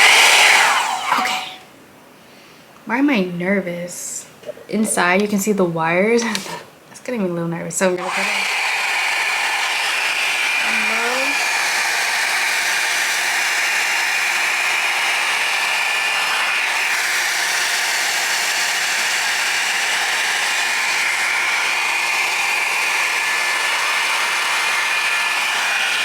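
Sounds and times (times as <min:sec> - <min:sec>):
hair dryer brush running: 0:00.0 - 0:01.6, 0:07.9 - 0:26.0.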